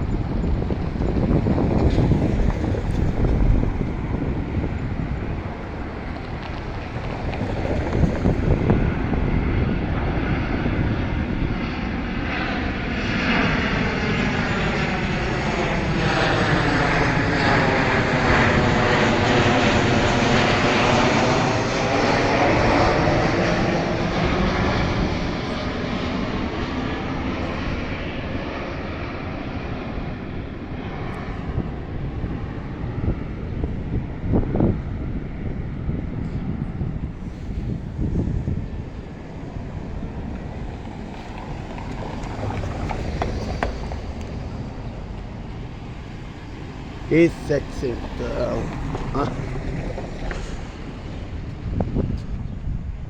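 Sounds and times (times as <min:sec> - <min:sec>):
jet airliner flying past: 0:00.0 - 0:53.0.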